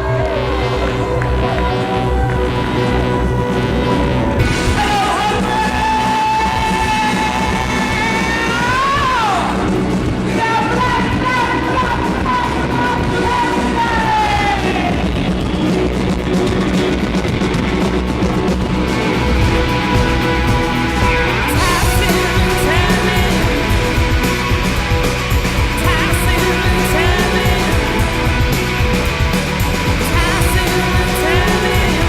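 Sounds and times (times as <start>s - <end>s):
rock band backing: 0.0s - 32.0s
person singing long notes: 21.2s - 29.2s, 29.9s - 32.0s.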